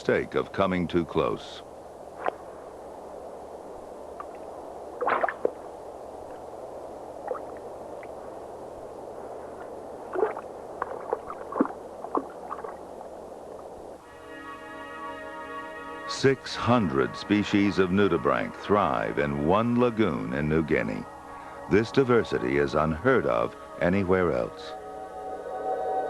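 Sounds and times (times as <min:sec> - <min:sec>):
gurgling clicks and pops: 0:04.2 - 0:04.4, 0:05.0 - 0:05.6, 0:09.6 - 0:13.7.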